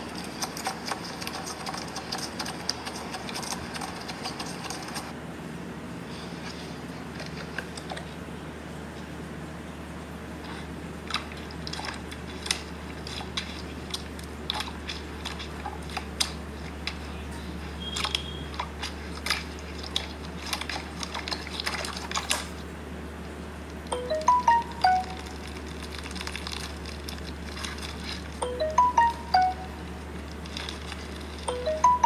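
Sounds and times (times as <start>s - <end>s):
rising chime notes: 23.9s - 25.2s, 28.4s - 29.9s, 31.5s - 32.0s.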